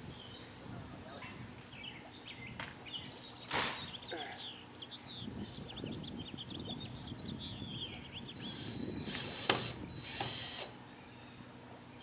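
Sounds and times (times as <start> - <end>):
birds chirping: 0.0 - 12.0
tool ratcheting and whirring: 8.4 - 10.8.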